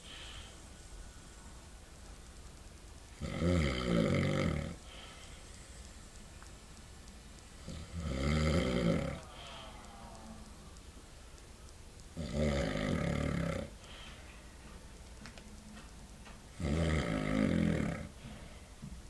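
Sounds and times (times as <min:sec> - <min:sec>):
man snoring loudly: 0:03.2 - 0:04.8, 0:07.7 - 0:09.2, 0:12.2 - 0:13.7, 0:16.6 - 0:18.1.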